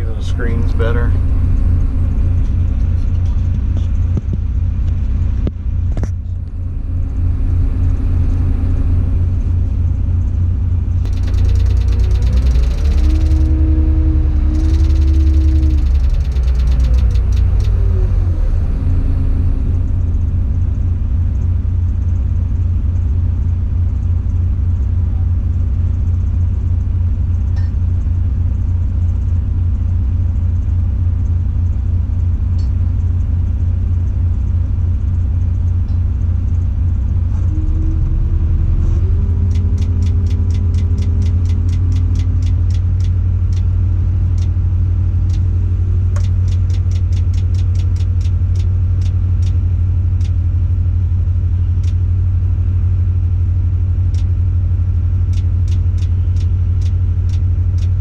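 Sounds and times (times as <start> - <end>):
rising engine tone: 0.0 - 23.2, 36.6 - 44.5
crane engine running: 0.0 - 58.0
fast even ticking: 11.0 - 18.0, 39.4 - 43.7, 46.2 - 49.6, 55.3 - 58.0.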